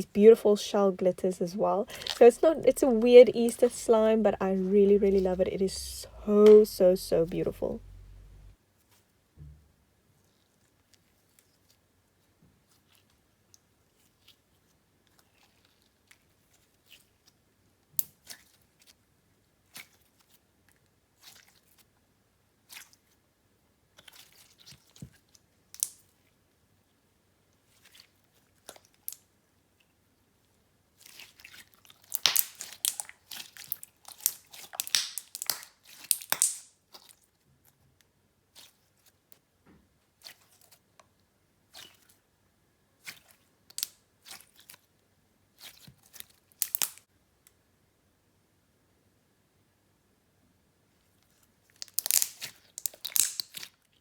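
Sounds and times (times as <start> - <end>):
slime crackling pops: 32.1 - 33.1, 34.1 - 36.6, 46.6 - 47.0, 51.8 - 53.6
slime sticky clicks and pops: 32.1 - 33.1, 34.1 - 36.6, 46.6 - 47.0, 51.8 - 53.6.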